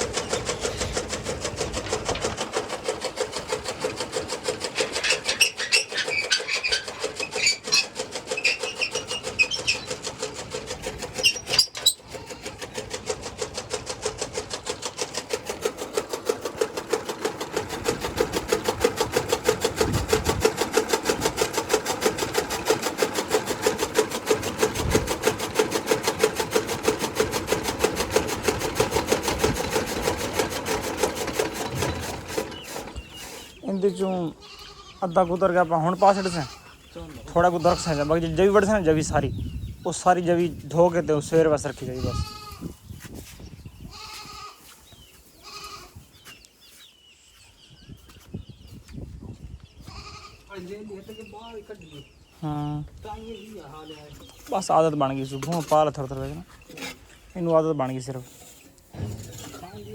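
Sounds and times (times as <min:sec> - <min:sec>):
chaff cutter chopping grass: 0:00.0 - 0:34.3, 0:54.3 - 0:59.9.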